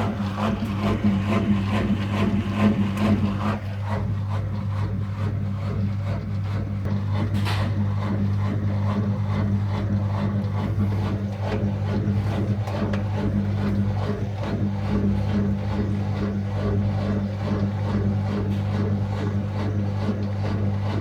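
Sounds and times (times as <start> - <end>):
washing machine banging: 0.0 - 3.8
washing machine hum: 0.0 - 21.0.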